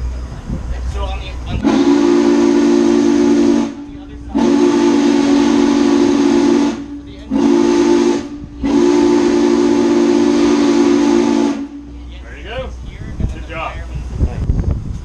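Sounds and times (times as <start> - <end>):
steam hissing: 0.0 - 14.2
steam whistle blasts: 1.6 - 12.0.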